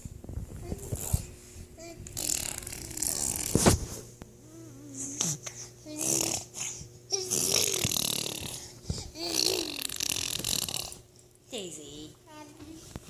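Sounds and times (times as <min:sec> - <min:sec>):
person making snorting grunts: 0:07.2 - 0:08.6.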